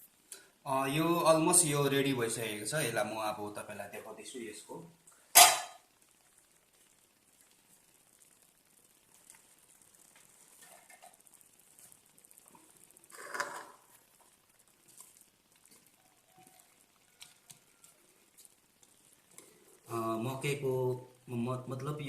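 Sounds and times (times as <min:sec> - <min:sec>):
pot scrape or clatter: 0:05.4 - 0:05.8, 0:13.1 - 0:13.9
pot lid clicks and rustling: 0:13.2 - 0:13.8.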